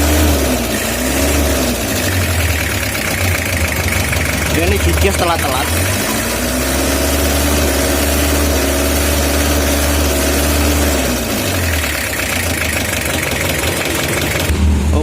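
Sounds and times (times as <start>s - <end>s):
diesel engine revving and stumbling: 0.0s - 15.0s.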